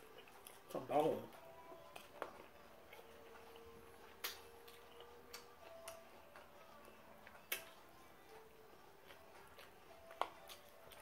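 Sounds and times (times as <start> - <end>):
mouth chewing clicks and smacks: 1.9 - 6.6, 7.2 - 7.8.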